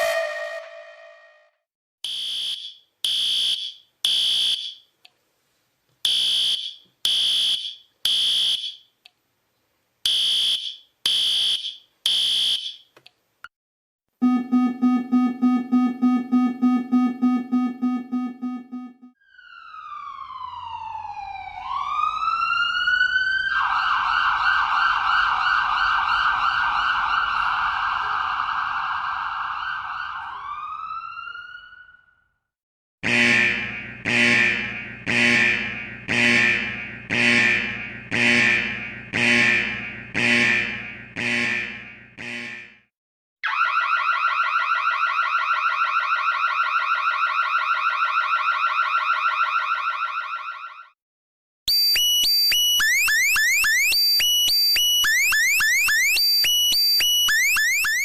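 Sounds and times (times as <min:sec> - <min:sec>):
electronic siren wailing: 0:00.0 - 0:02.7, 0:14.2 - 0:32.2, 0:33.0 - 0:42.8, 0:43.4 - 0:51.0, 0:51.7 - 0:58.0
high electronic alarm beeps: 0:14.2 - 0:19.1, 0:51.7 - 0:58.0
low pulsing buzzer: 0:14.2 - 0:19.1, 0:33.0 - 0:42.8.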